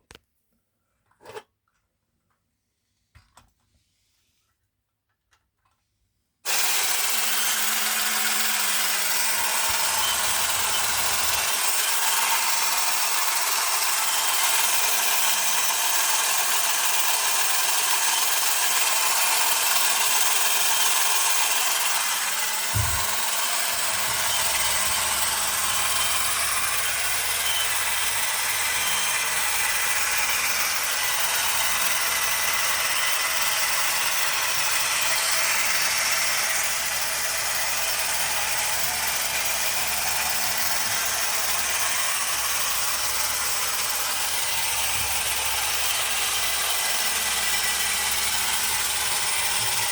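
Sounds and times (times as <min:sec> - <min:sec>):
toy motor whirring and rattling: 0:06.5 - 0:49.9
brief knock: 0:22.8 - 0:23.2.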